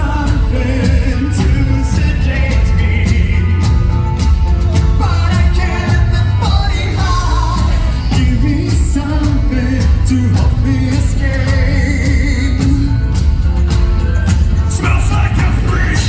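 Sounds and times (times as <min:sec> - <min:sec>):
live metal band playing: 0:00.0 - 0:16.0
person singing: 0:00.0 - 0:16.0.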